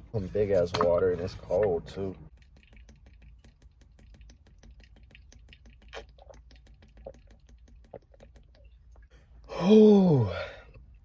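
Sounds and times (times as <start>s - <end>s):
person gulping water: 2.4s - 9.1s.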